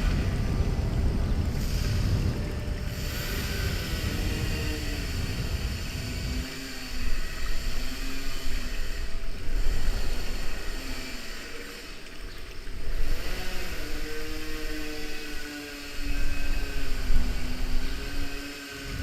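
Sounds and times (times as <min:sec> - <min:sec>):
low uneven rumble: 0:00.0 - 0:07.8
steady droning tone: 0:00.0 - 0:19.0.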